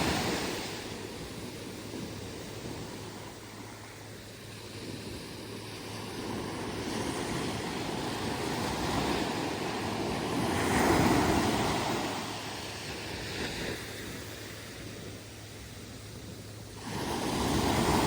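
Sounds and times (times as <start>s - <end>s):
wave breaking on beach: 0.0s - 1.1s.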